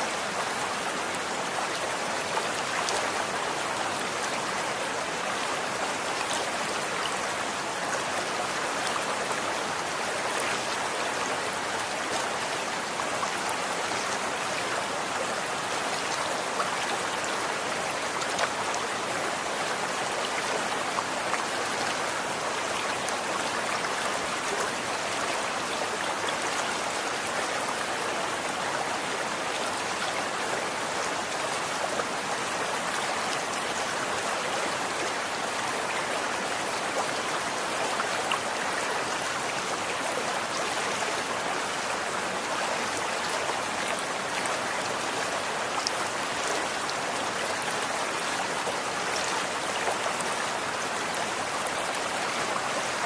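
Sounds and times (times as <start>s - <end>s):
stream flowing: 0.0s - 53.0s.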